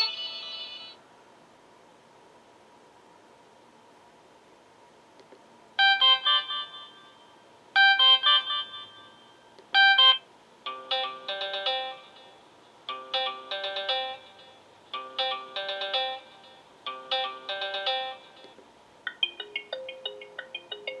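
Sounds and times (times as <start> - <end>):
melodic phone ringtone: 0.0 - 1.0, 7.8 - 18.4, 19.1 - 21.0.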